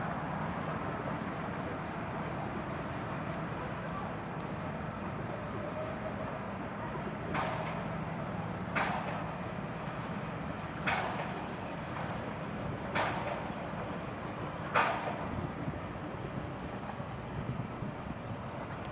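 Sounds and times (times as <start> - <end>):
train wheels clacking over rails: 7.3 - 8.0, 8.6 - 15.6.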